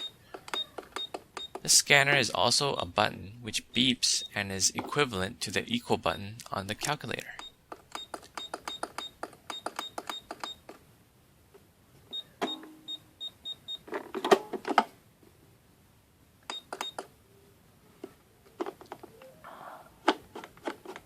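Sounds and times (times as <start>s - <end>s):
toy cash register button beeps: 7.3s - 10.6s, 12.1s - 13.8s
plastic clicks and clatter: 18.0s - 19.1s, 20.0s - 21.0s.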